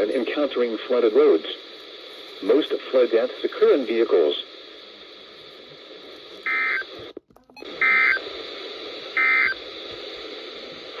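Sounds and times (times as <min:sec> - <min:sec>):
radio hiss: 0:00.0 - 0:11.0
data tone bursts: 0:09.2 - 0:09.6.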